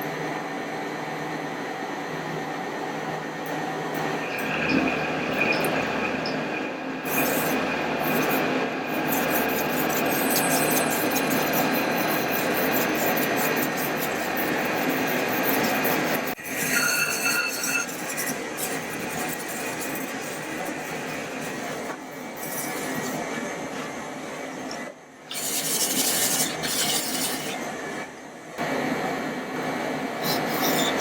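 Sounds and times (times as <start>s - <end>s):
knife scraping on whetstone: 9.0s - 23.9s, 25.3s - 27.7s.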